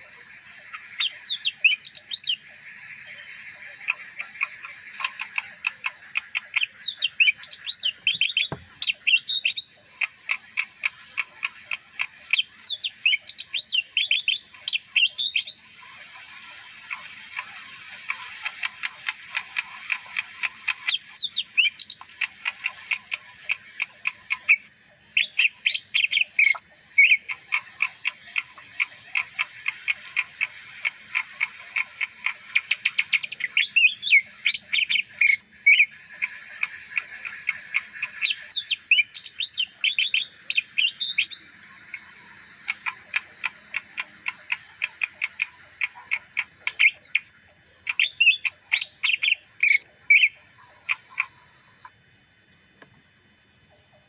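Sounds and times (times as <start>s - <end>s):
bird singing: 0.0s - 51.9s.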